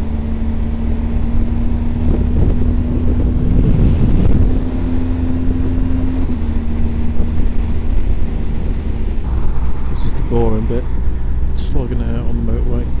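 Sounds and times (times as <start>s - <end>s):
motorcycle engine running: 0.0s - 13.0s
road and wind rumble: 0.0s - 13.0s
rushing noise: 7.6s - 12.0s.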